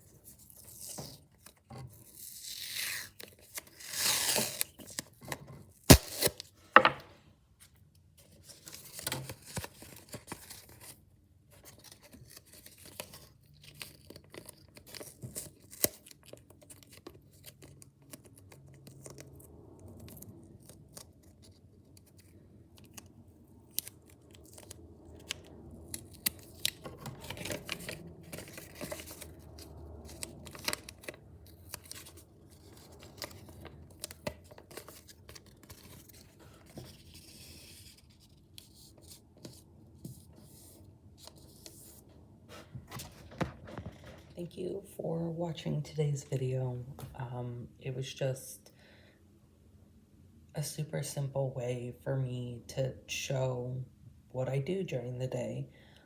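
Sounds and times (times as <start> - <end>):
paper ripping: 0.5 - 5.1, 5.9 - 6.9, 23.7 - 39.5
paper rustling and light knocks: 23.7 - 44.4.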